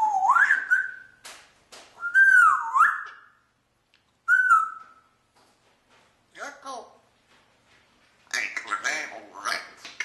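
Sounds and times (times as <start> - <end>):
parrot whistling: 0.0 - 1.2, 2.0 - 3.4, 4.2 - 5.2.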